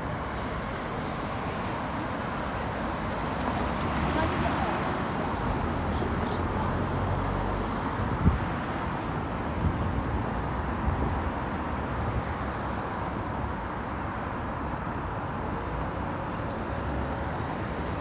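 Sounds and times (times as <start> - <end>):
road traffic rumble: 0.0 - 18.0.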